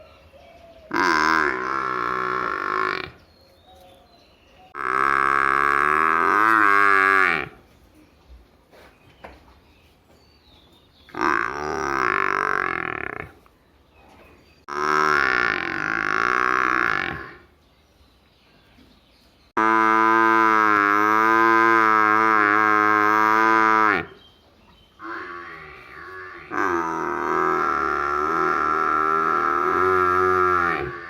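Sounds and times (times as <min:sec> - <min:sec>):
buffalo calf mooing: 0:00.9 - 0:03.2, 0:04.7 - 0:07.6, 0:11.1 - 0:13.4, 0:14.7 - 0:17.5, 0:19.6 - 0:24.2, 0:25.0 - 0:31.0.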